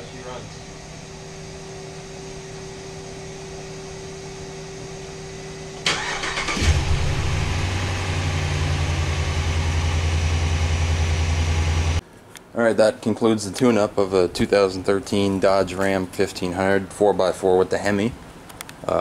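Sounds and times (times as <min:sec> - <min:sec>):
steady background hum: 0:00.0 - 0:19.0
engine cranking and idling: 0:05.8 - 0:12.0.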